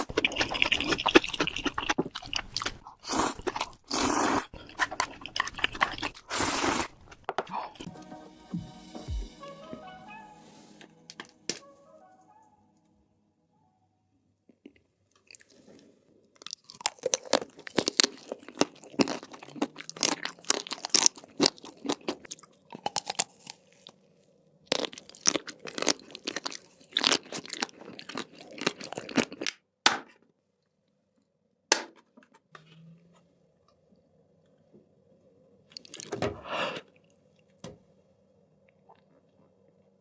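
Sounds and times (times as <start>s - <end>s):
chewing crunchy food: 0.0s - 7.9s, 14.6s - 24.1s, 24.7s - 29.6s, 35.7s - 36.1s.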